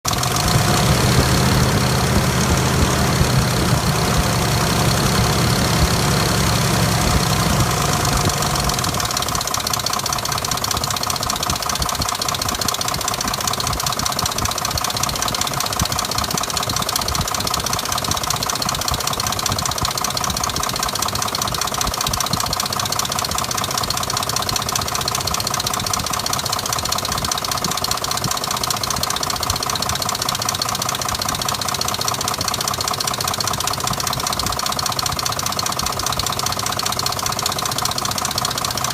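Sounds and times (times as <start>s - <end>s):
engine running: 0.1s - 38.9s
rapid engine knocking: 0.1s - 38.9s.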